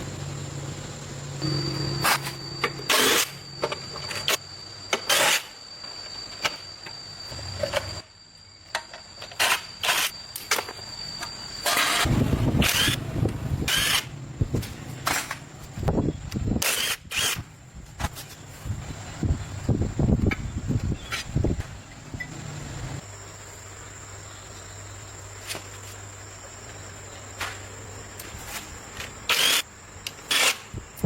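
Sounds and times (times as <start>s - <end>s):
low hum: 0.0s - 4.9s.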